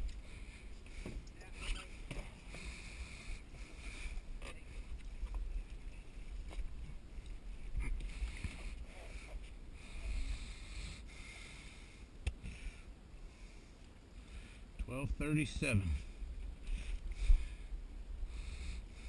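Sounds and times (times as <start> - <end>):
regulator hiss on inhale: 16.6 - 19.0.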